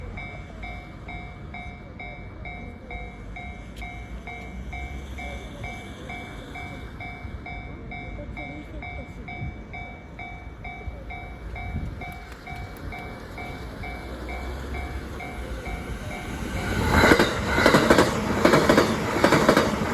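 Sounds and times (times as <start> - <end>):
level crossing warning bell: 0.0 - 19.9.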